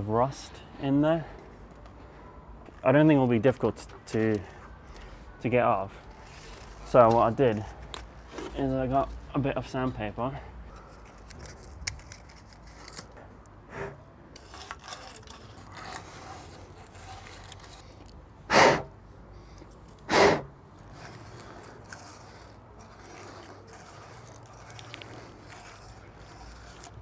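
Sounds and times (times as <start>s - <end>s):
sandpaper scratching on metal: 14.4s - 17.9s, 20.1s - 27.0s.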